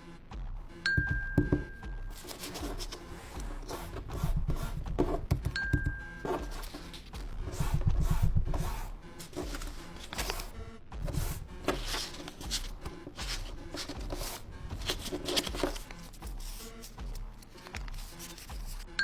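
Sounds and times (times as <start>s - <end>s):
slowed-down music with heavy bass: 0.0s - 19.0s.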